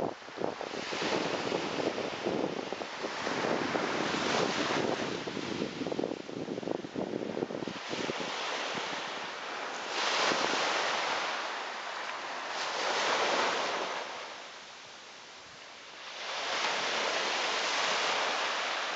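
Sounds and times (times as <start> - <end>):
ocean waves breaking on beach: 0.0 - 18.9.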